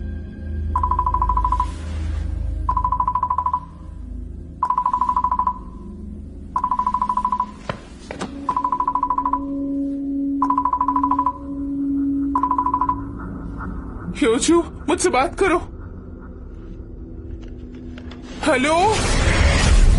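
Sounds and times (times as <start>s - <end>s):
low background music: 0.0s - 19.9s
phone ringing with electronic trill: 0.8s - 2.0s, 2.7s - 4.0s, 4.6s - 7.7s, 8.4s - 13.3s.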